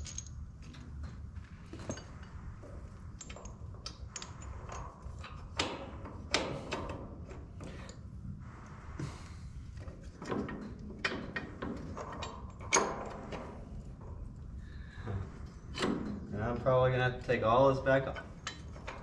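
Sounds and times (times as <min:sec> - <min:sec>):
metal parts clinking: 0:00.0 - 0:00.4.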